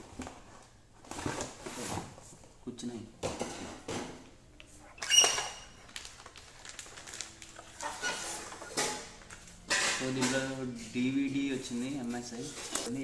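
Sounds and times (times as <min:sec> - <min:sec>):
short high-pitched squeak: 0:05.0 - 0:05.7.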